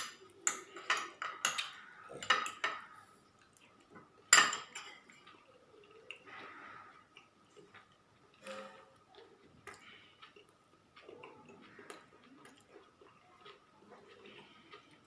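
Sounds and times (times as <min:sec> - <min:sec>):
tableware clinking: 0:00.0 - 0:02.9, 0:04.3 - 0:05.4, 0:08.4 - 0:09.0
person chewing: 0:05.0 - 0:15.0.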